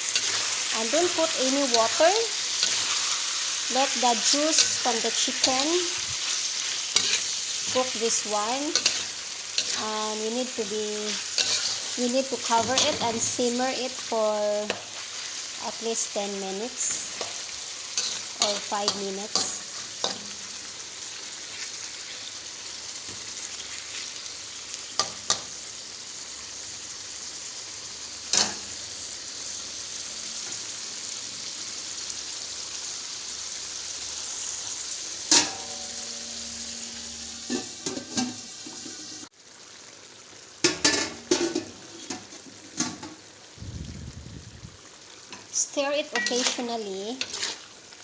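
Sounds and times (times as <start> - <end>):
chicken sizzling in a pan: 0.0 - 48.0
utensils clinking against pan: 35.3 - 39.2, 40.7 - 43.2, 46.1 - 47.6.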